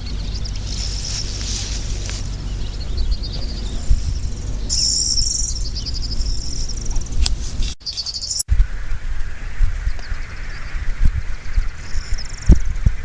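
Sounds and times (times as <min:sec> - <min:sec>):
low rumble: 0:00.0 - 0:07.8
skylark singing high trills: 0:00.0 - 0:13.0.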